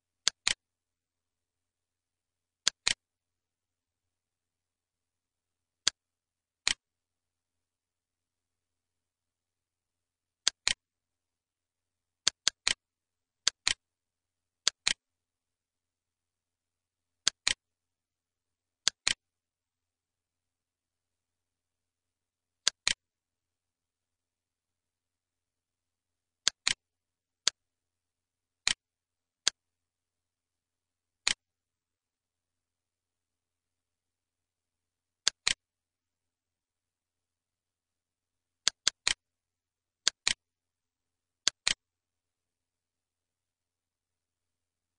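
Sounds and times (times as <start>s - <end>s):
computer mouse clicking: 0.2s - 0.6s, 2.6s - 3.0s, 6.6s - 6.8s, 10.4s - 10.8s, 12.2s - 12.8s, 13.4s - 13.8s, 14.6s - 15.0s, 17.2s - 17.6s, 18.8s - 19.2s, 22.6s - 23.0s, 26.4s - 26.8s, 28.6s - 28.8s, 31.2s - 31.4s, 35.2s - 35.6s, 38.6s - 39.2s, 40.0s - 40.4s, 41.4s - 41.9s.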